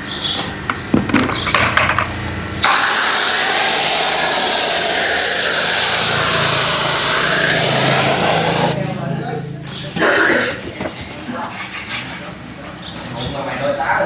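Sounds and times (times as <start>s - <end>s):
low motor hum: 2.2s - 8.8s
pressure washer water jet hissing: 2.6s - 8.8s.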